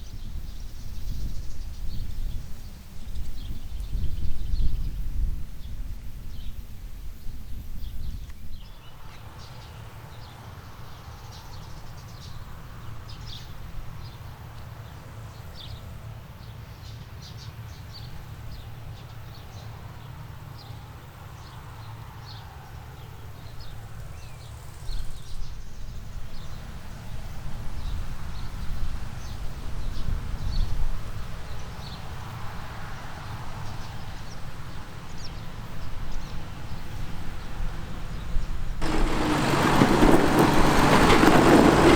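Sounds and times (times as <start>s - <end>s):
birds chirping: 38.8s - 41.9s.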